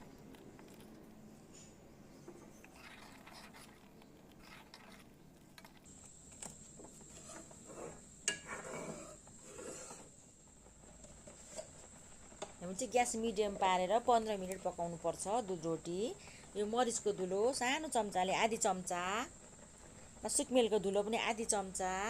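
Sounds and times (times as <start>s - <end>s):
spoon scraping pot: 2.4s - 5.8s, 7.0s - 10.1s.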